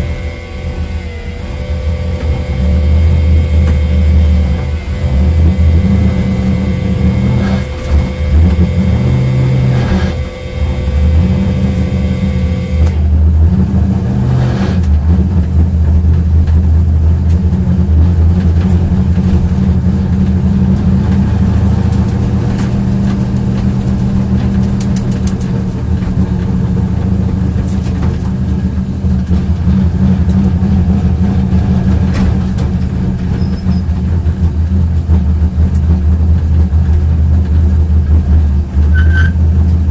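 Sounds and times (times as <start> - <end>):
misfiring car engine running: 0.0 - 39.9.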